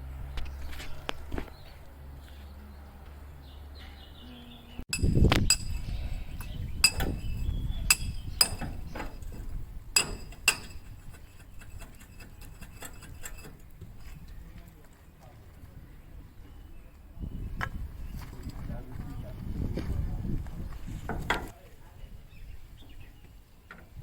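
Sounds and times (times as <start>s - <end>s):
metal-on-metal clinks: 4.9s - 6.0s, 6.8s - 13.6s.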